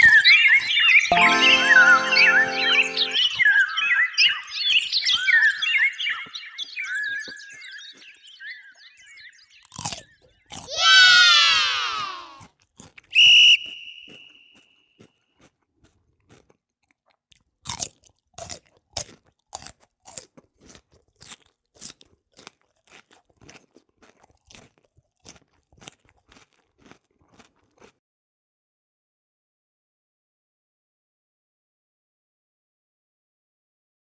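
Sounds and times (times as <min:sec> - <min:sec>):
crunching clicks: 0:09.6 - 0:10.7
parrot whistle: 0:13.1 - 0:14.5.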